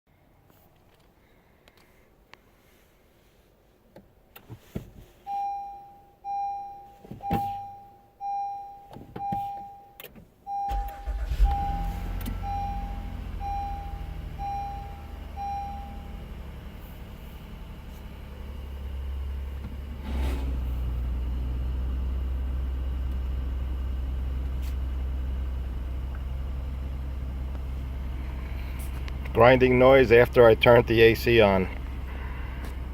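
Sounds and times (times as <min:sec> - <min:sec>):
car engine cranking: 0:10.0 - 0:23.4
car engine idling: 0:10.7 - 0:32.9.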